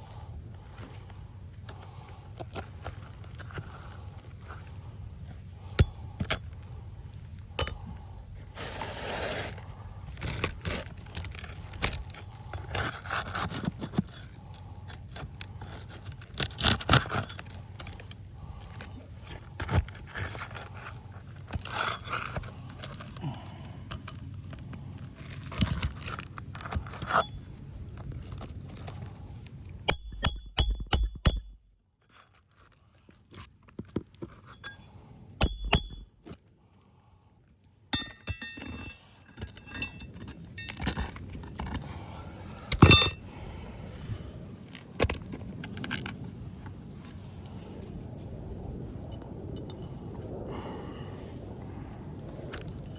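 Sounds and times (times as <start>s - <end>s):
tools scraping on shingles: 10.2s - 29.2s
sharp metallic clinks: 38.0s - 41.8s.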